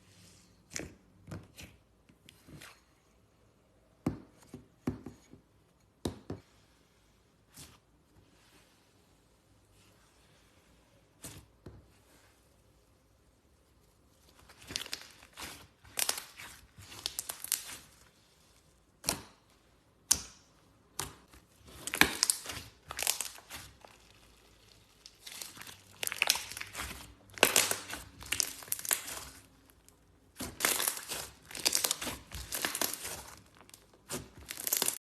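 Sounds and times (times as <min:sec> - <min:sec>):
slime crackling and squelching: 0:07.4 - 0:35.0.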